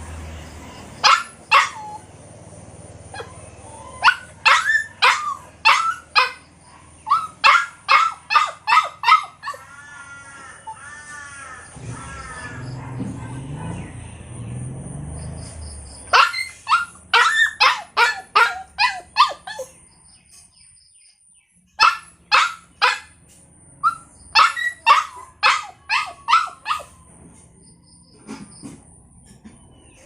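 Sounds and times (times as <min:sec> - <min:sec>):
puppy yapping: 0:01.0 - 0:02.1, 0:03.1 - 0:13.8, 0:16.1 - 0:19.8, 0:21.8 - 0:23.2, 0:23.8 - 0:27.1.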